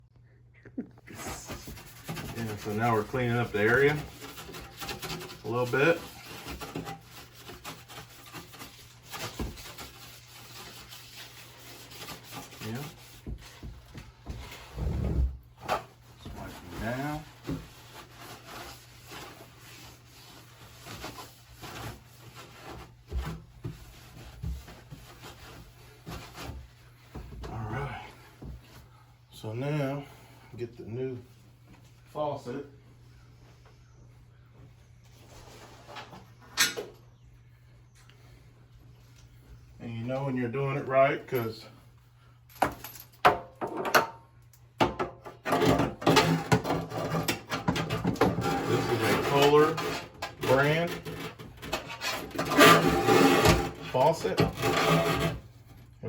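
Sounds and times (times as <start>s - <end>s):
cloth rubbing a sink: 1.1s - 28.9s, 46.3s - 55.7s.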